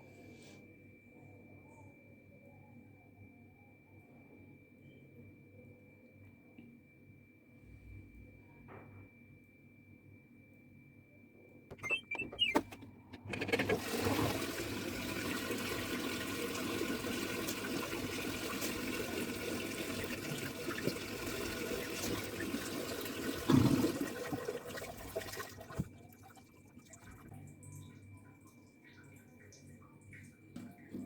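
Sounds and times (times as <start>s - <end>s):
water pouring into washing machine: 11.8s - 28.0s.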